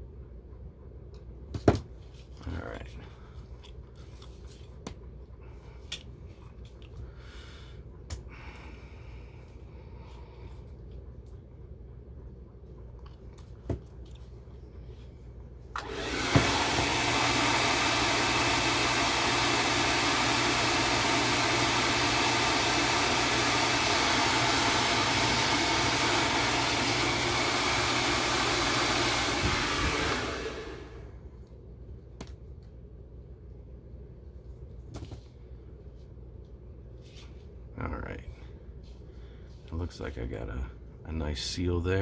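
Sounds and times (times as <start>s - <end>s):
hair dryer blowing: 15.8s - 31.2s.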